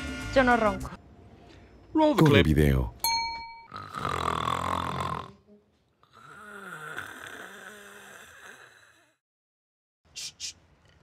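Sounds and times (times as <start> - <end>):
woman snoring: 3.7 - 9.2.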